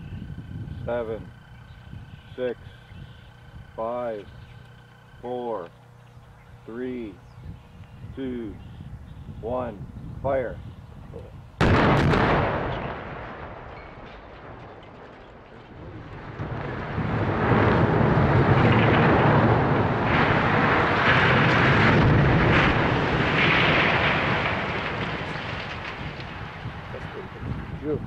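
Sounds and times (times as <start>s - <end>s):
demolition blast echo: 11.2s - 28.0s
smokestack collapsing rumble: 11.6s - 28.0s.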